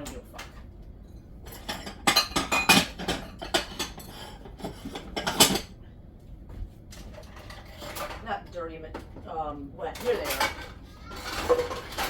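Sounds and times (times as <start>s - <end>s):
dishes and cutlery clattering: 0.0s - 5.8s, 6.9s - 8.4s, 9.9s - 12.0s.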